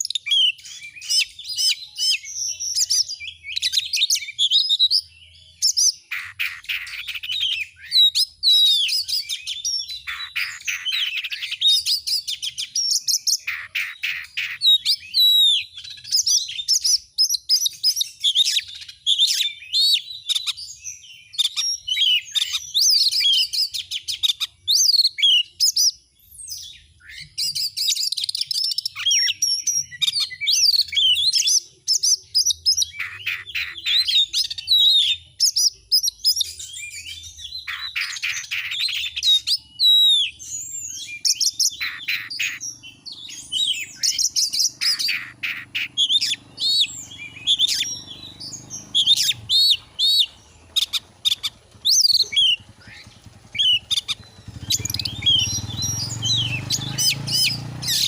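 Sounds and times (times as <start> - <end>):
bird singing: 0.0 - 58.0
fast rattling bird trills: 5.6 - 20.7, 27.0 - 58.0.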